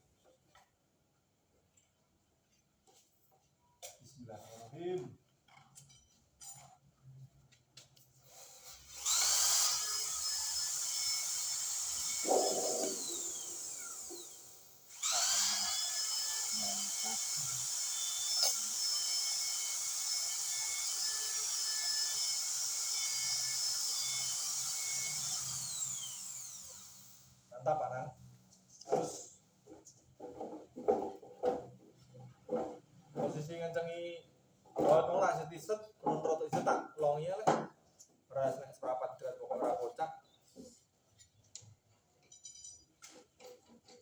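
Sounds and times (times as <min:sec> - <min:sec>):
metal lathe motor whining: 0:08.9 - 0:23.0.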